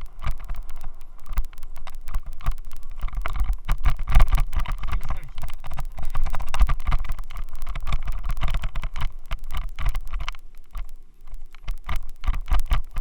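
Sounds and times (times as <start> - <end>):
camera rattling in mount: 0.1 - 10.4.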